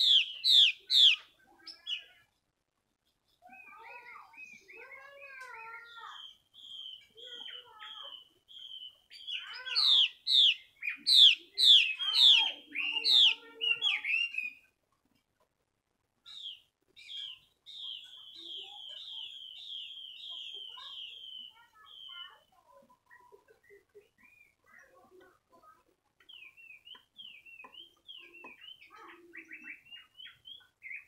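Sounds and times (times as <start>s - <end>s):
bird whistling calls: 0.0s - 2.1s, 6.0s - 14.6s, 16.3s - 22.5s.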